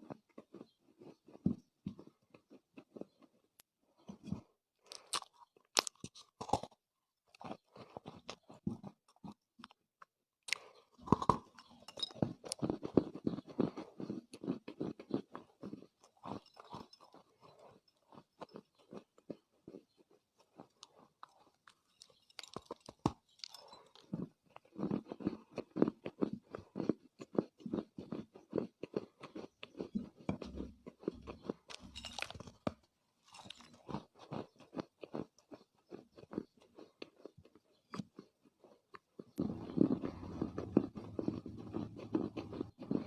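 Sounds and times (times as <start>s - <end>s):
clay crunching being chewed: 0.0s - 43.0s.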